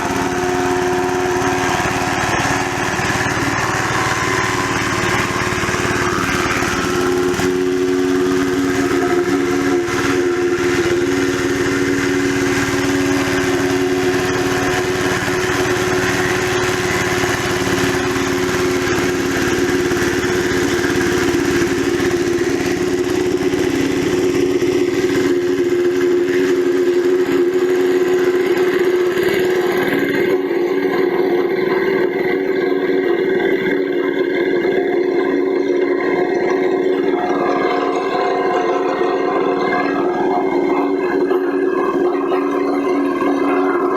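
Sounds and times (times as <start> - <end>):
wood chipper running: 0.0 - 43.9.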